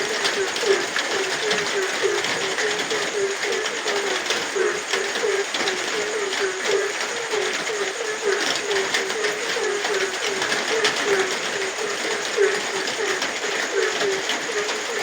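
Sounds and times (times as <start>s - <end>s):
frog croaking: 0.0s - 15.0s
raindrops ticking: 0.0s - 15.0s
steady rain hiss: 0.0s - 15.0s.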